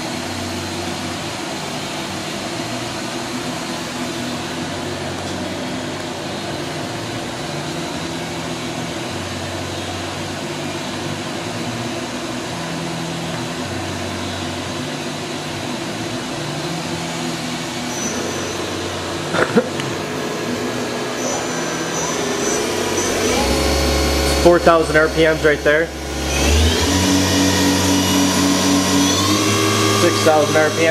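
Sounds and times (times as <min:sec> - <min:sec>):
machine mechanical hum: 0:00.0 - 0:30.9
faint high whine: 0:16.6 - 0:30.9.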